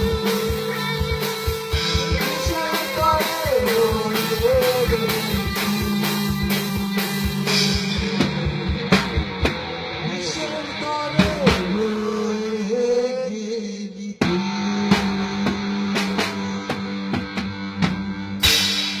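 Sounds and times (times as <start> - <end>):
drum kit hits: 0.0 - 10.0, 14.2 - 19.0
bending guitar notes: 0.0 - 11.8, 14.2 - 19.0.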